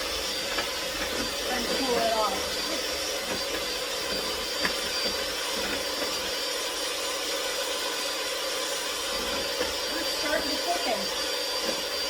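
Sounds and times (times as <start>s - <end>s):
electric mixer running: 0.0s - 12.0s.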